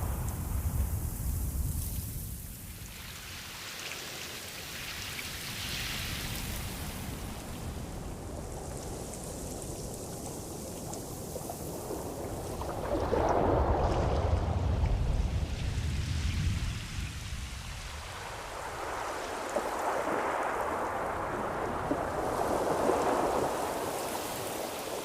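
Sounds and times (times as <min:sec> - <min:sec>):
ocean waves surging: 0:17.2 - 0:25.0.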